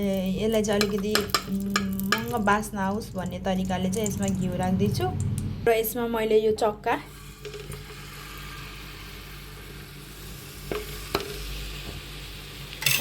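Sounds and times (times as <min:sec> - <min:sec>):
ghee sizzling in a pan: 0:07.1 - 0:13.0.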